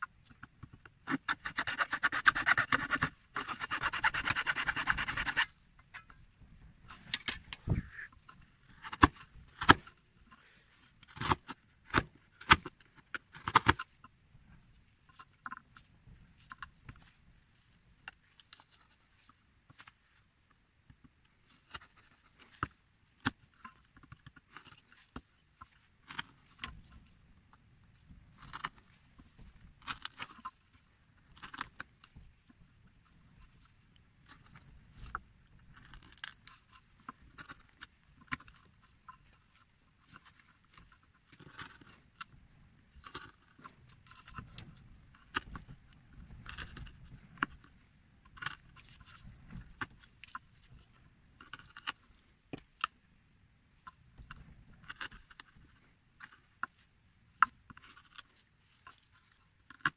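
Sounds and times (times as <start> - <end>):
carving tool scraping wood: 1.0 - 6.1.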